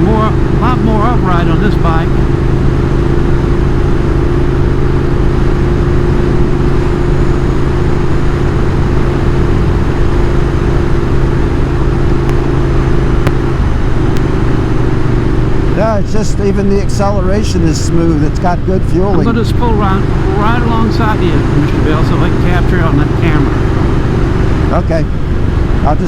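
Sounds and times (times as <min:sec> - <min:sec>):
motorcycle engine running: 0:00.0 - 0:26.0.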